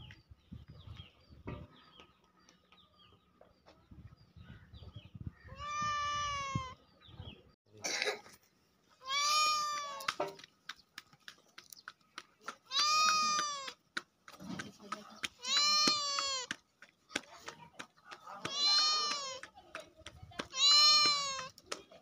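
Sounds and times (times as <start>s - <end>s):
cat meowing: 5.5s - 6.8s, 9.0s - 10.1s, 12.7s - 13.7s, 15.4s - 16.5s, 18.5s - 19.4s, 20.5s - 21.5s.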